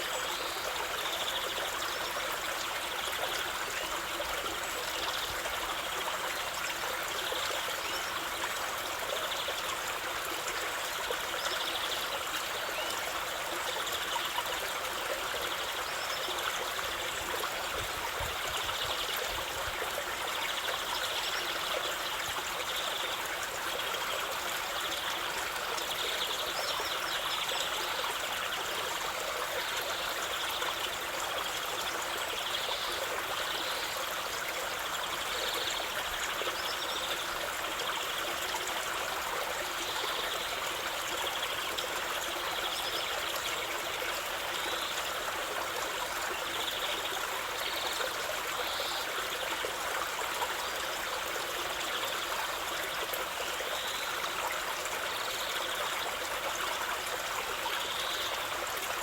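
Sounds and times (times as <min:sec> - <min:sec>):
stream flowing: 0:00.0 - 0:59.0.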